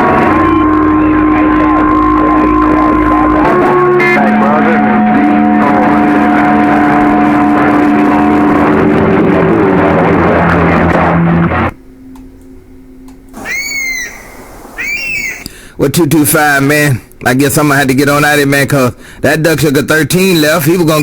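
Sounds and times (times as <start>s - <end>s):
guitar music over radio: 0.0s - 11.8s
faint low hum: 0.0s - 21.0s.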